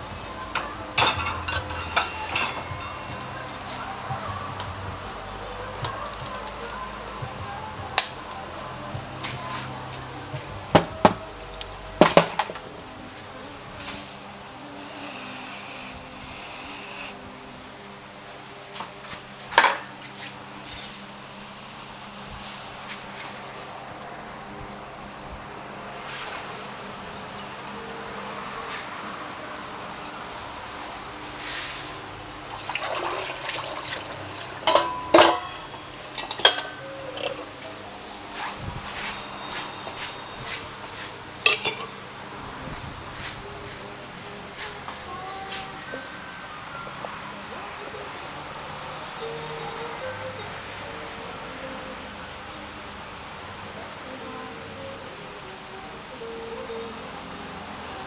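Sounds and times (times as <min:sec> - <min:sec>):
metal tools clanking: 0:00.5 - 0:04.8, 0:34.6 - 0:37.4, 0:38.4 - 0:42.0
metal hand tools clinking: 0:00.9 - 0:04.6
hiss: 0:14.8 - 0:17.2.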